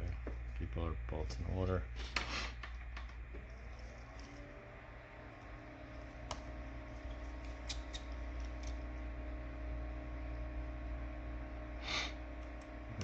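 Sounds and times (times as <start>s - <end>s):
personal fan humming: 0.0s - 13.0s.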